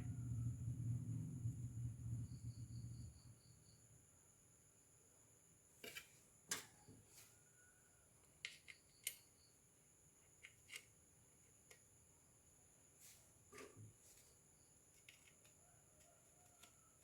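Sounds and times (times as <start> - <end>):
small clicks and taps: 15.0 - 16.8.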